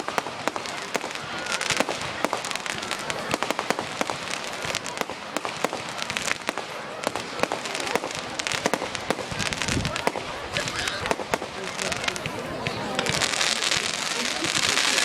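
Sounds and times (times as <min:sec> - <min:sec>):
fireworks cracking and banging: 0:00.0 - 0:15.0.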